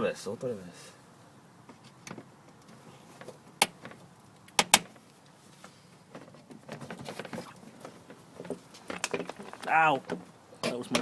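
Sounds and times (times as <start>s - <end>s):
plastic fasteners clicking: 8.5s - 11.0s.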